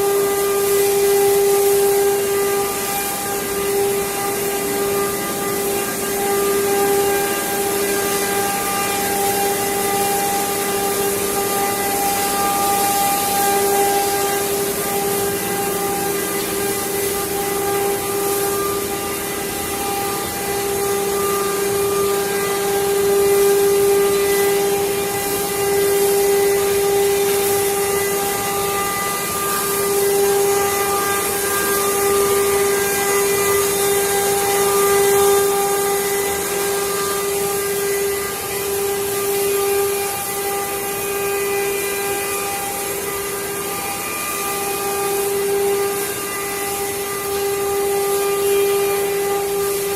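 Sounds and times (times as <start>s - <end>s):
hiss of cutting: 0.0s - 49.9s
wood carving machine whining: 0.0s - 49.9s.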